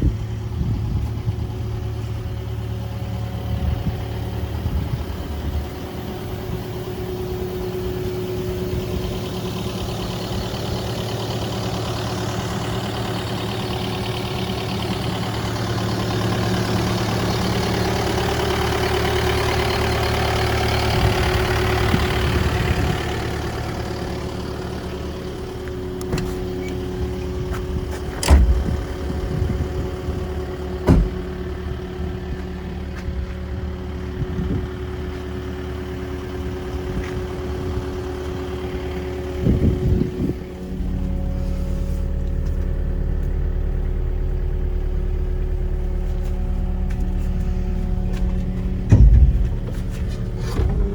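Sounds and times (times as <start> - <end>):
excavator diesel engine running: 0.0 - 50.9
sharp knocks: 48.8 - 50.8.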